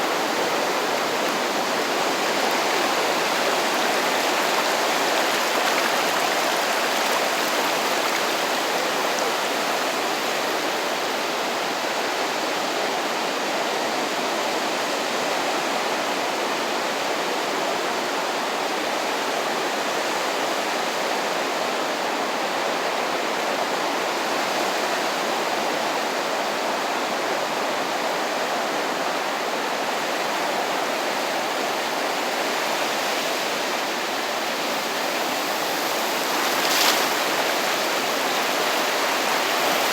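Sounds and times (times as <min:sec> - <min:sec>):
waves washing onto shore: 0:00.0 - 0:10.8, 0:32.1 - 0:39.9.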